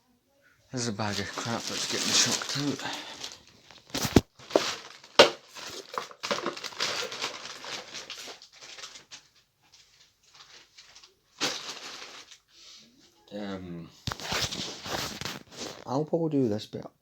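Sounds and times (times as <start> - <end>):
plastic bag rustling: 0.8 - 12.5, 14.1 - 15.9.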